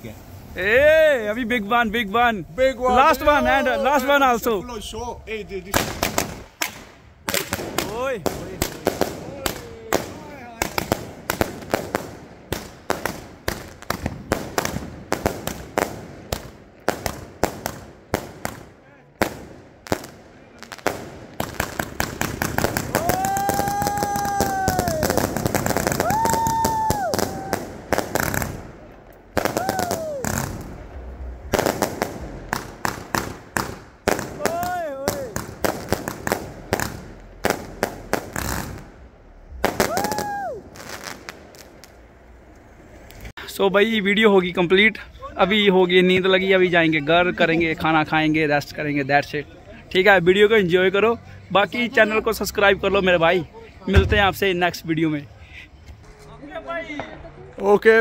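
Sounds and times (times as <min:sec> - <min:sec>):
fireworks banging: 0:00.0 - 0:43.3, 0:53.9 - 0:55.0
high call rising and falling: 0:00.5 - 0:06.4, 0:22.7 - 0:28.4, 0:29.4 - 0:32.8, 0:34.1 - 0:41.7.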